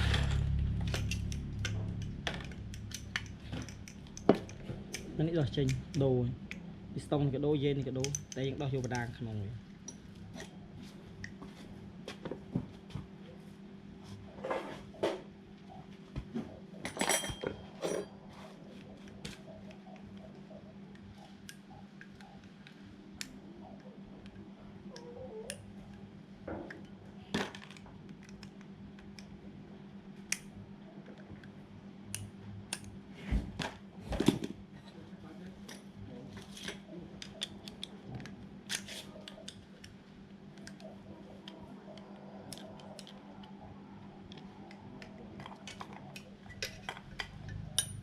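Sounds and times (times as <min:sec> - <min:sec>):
steady low hum: 0:00.0 - 0:48.0
metal parts and tools clinking: 0:16.8 - 0:18.1.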